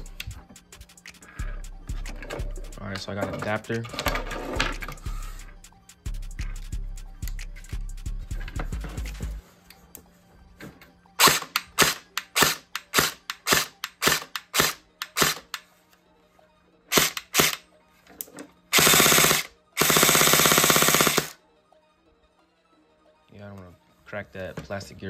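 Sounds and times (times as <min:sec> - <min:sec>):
airsoft gun full-auto bursts: 0:11.2 - 0:15.4, 0:16.9 - 0:17.6, 0:18.7 - 0:21.4.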